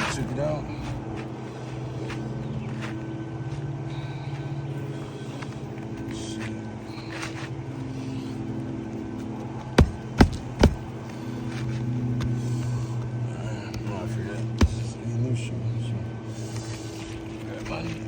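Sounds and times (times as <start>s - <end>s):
low mechanical drone: 0.0s - 18.0s
hammer knocks on roof: 9.8s - 10.9s.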